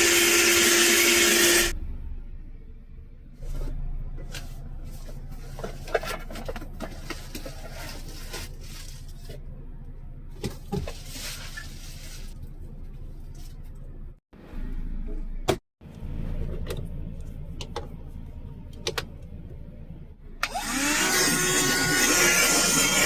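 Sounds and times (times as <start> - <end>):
handheld vacuum running: 0.0 - 1.7, 20.4 - 23.0.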